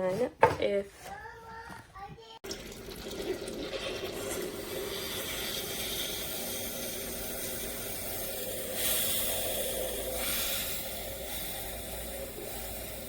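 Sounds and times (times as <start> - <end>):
water pouring into container: 2.4 - 13.0.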